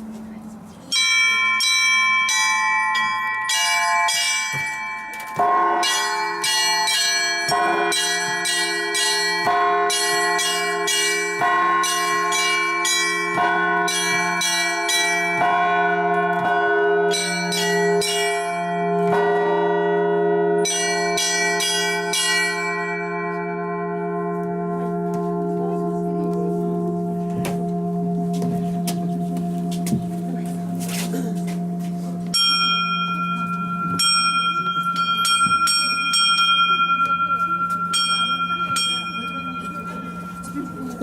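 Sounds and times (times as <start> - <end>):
deep bell humming: 0.0 - 41.0
small church bells ringing: 0.0 - 41.0.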